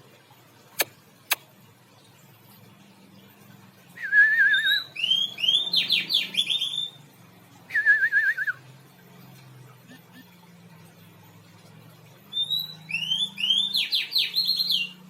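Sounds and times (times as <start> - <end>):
songbird singing: 3.2 - 8.6, 12.2 - 15.0.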